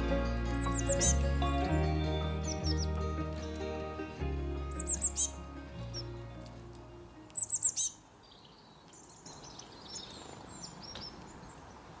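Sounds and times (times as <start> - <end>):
background music: 0.0 - 7.8
small songbird chirping: 0.0 - 11.8.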